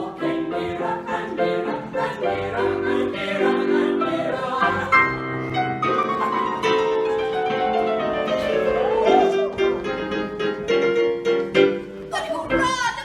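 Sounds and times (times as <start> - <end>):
piano accompaniment: 0.0 - 13.0
person singing: 8.6 - 9.6.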